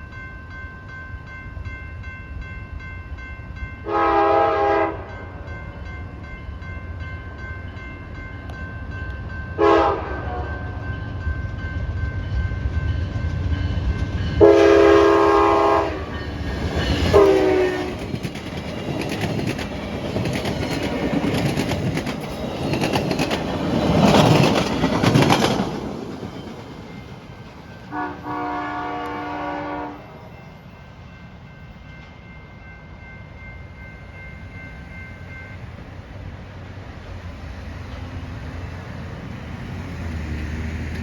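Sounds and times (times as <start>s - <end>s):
train air horn blasts: 3.8s - 5.2s, 9.6s - 10.8s, 14.4s - 16.2s, 17.0s - 18.1s, 27.9s - 30.3s
train wheel clatter: 11.4s - 28.2s.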